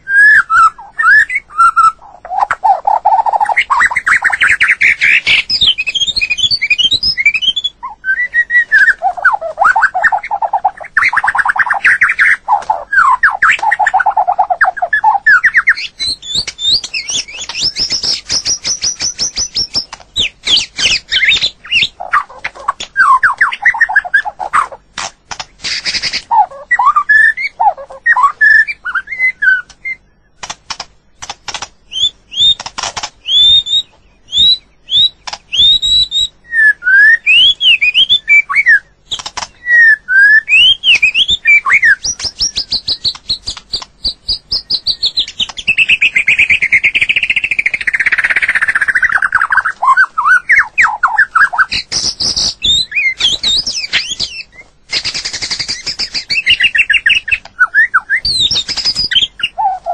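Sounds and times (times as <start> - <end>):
bird whistled song: 0.0 - 24.8, 25.6 - 30.5, 31.8 - 59.9
bird rapid chattering: 0.0 - 59.9
bird clicks: 8.9 - 24.3, 24.9 - 26.3, 30.4 - 33.5, 35.2 - 35.8, 39.1 - 39.7, 40.5 - 46.8, 58.3 - 59.3.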